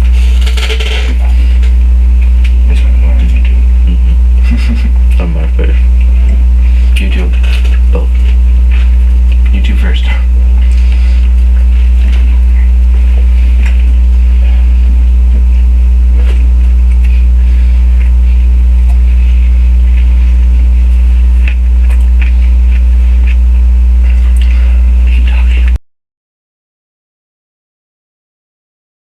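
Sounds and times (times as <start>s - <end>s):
low electrical hum: 0.0s - 25.8s
faint clicks and scrapes: 0.1s - 2.5s.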